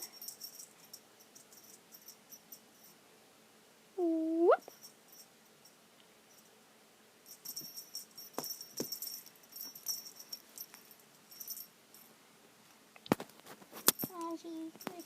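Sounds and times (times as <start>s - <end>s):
small metal chain jingling: 0.0s - 3.0s, 4.6s - 6.5s, 7.2s - 12.1s, 13.9s - 15.0s.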